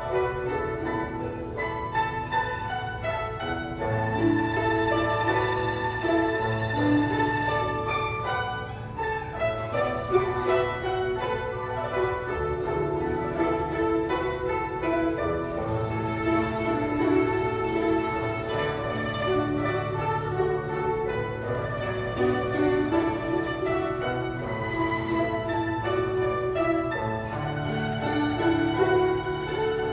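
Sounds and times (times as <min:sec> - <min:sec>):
plucked zither ensemble: 0:00.0 - 0:29.9.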